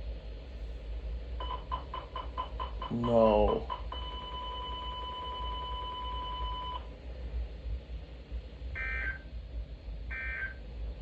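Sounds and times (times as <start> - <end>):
warning alarm tone: 8.8 - 9.2, 10.1 - 10.6.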